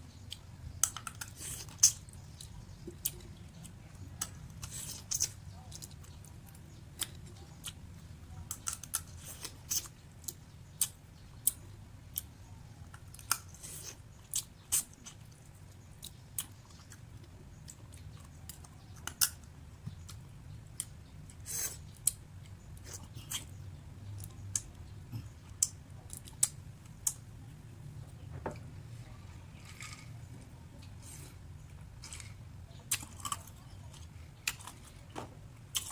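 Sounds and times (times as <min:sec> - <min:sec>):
low steady hum: 0:00.0 - 0:35.9
crisp crunching while eating: 0:29.4 - 0:30.2, 0:31.0 - 0:35.9.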